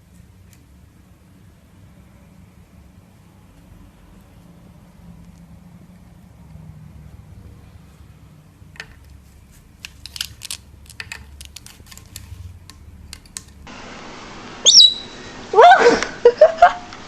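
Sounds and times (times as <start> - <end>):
parrot chirping and squawking: 14.6 - 15.6.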